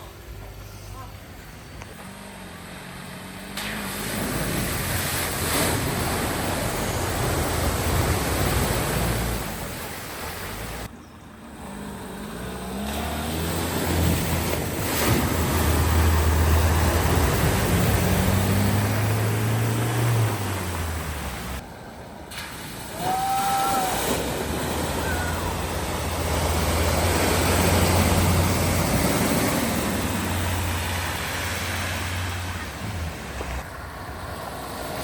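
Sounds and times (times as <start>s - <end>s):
engine running under load: 0.0s - 35.0s
water spraying and splashing: 2.1s - 10.9s, 12.7s - 21.6s, 22.3s - 35.0s.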